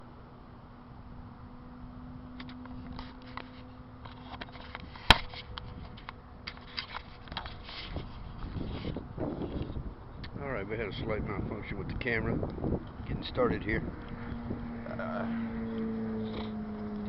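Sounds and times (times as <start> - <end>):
low hum: 0.0 - 10.2, 12.3 - 17.0
handling clicks and rustles: 2.3 - 9.8.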